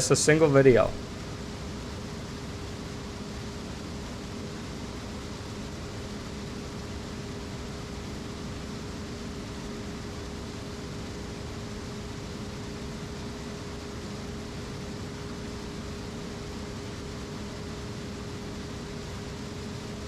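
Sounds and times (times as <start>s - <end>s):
steady machine whine: 0.0s - 1.6s.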